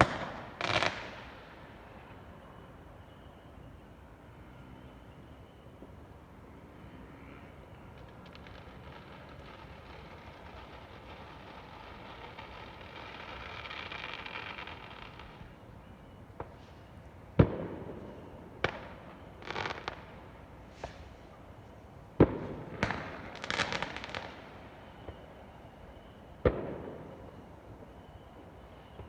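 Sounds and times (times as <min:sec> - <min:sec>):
firework bangs: 0:00.0 - 0:01.3
firework crackling: 0:08.0 - 0:15.5.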